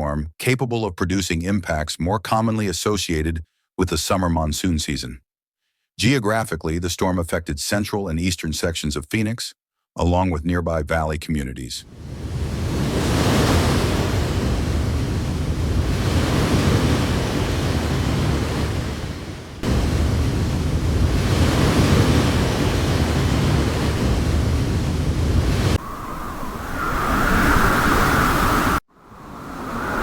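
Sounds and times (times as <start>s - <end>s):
wind buffeting microphone: 12.1s - 30.0s
rain: 19.7s - 21.5s.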